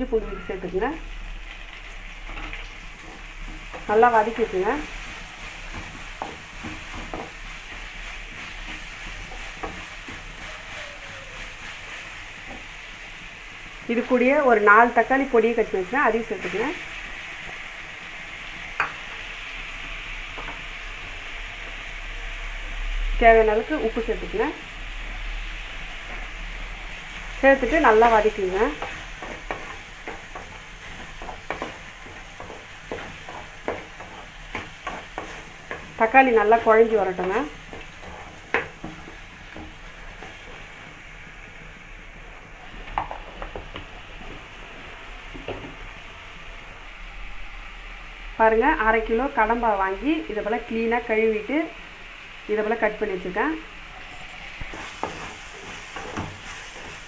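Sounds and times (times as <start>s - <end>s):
onions sizzling in hot oil: 0.0s - 57.0s
utensil scraping a pan: 27.1s - 40.7s, 54.0s - 57.0s.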